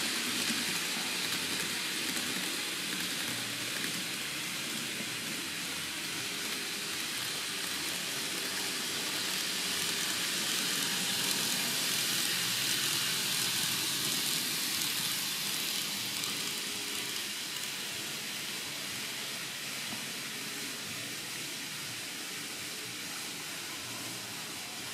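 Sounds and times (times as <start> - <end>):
model train wheels hissing on rails: 0.0 - 24.9.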